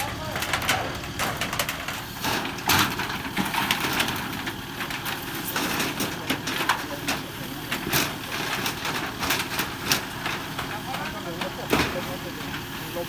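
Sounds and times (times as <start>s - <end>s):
knocks and clatter: 0.0s - 12.1s
engine running: 0.0s - 13.0s.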